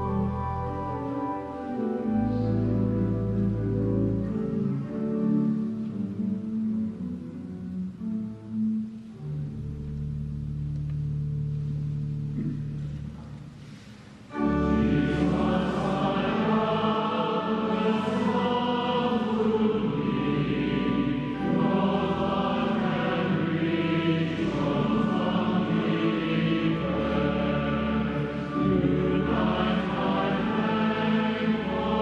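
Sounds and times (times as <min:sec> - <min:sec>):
choir singing a hymn: 0:14.3 - 0:32.0.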